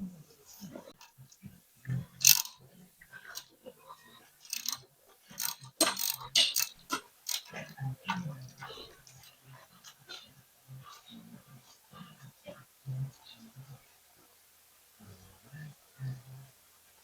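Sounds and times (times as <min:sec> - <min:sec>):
metal tools clicking and clinking: 0:02.2 - 0:02.6, 0:04.4 - 0:07.6.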